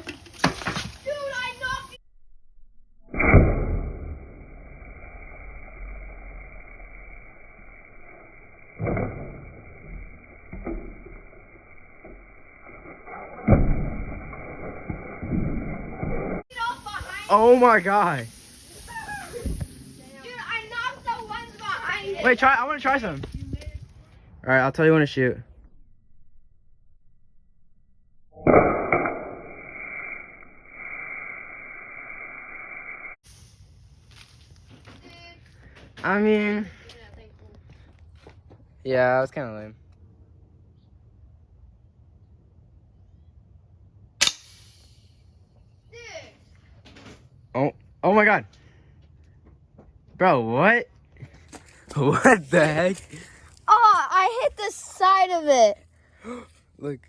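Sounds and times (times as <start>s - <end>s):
pellet striking target: 3.1s - 4.6s, 8.8s - 11.3s
muffled hiss: 16.5s - 23.6s
bb gun pop: 44.2s - 44.8s.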